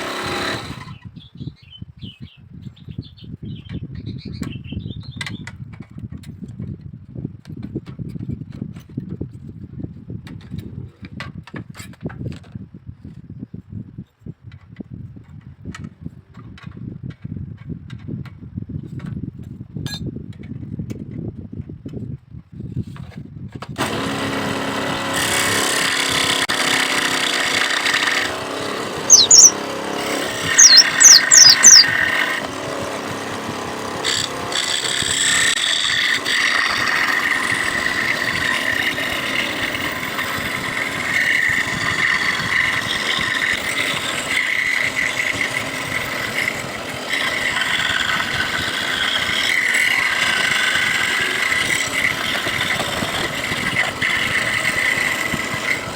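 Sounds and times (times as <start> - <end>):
small power tool cutting bamboo: 0.0 - 1.0, 23.8 - 55.9
high-pitched squeals: 28.9 - 29.6, 30.5 - 32.0.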